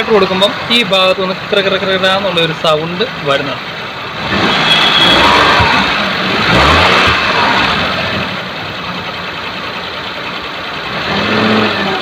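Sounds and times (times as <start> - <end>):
abnormal engine noise: 0.0 - 12.0
car engine idling with throttle blips: 0.0 - 12.0.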